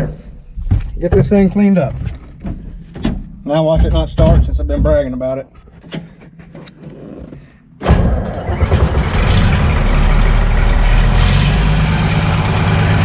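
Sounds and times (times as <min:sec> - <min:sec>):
diesel engine starting and running: 0:07.8 - 0:13.0.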